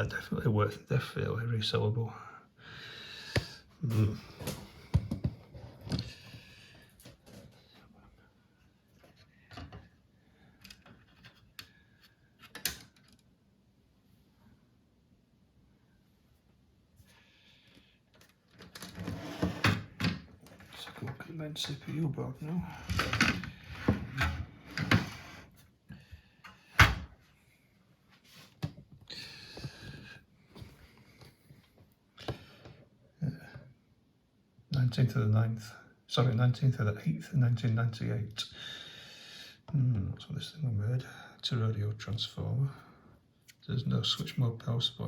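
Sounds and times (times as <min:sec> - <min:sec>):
clicks and knocks of parts handled: 0:10.6 - 0:13.3.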